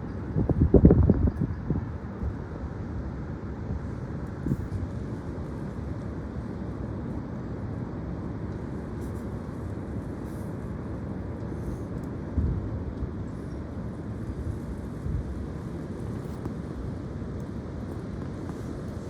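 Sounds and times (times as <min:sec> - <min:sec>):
wind buffeting microphone: 0:00.2 - 0:02.7.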